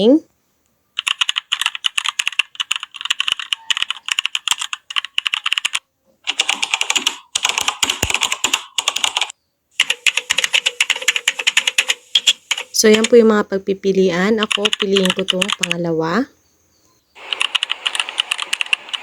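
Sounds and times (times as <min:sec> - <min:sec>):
keyboard key clicks: 0:06.3 - 0:13.1.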